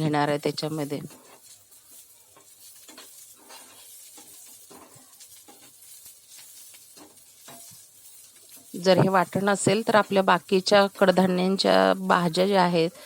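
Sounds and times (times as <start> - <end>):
stirring strokes scraping: 0.0 - 11.2
onions sizzling in a pan: 0.0 - 13.0.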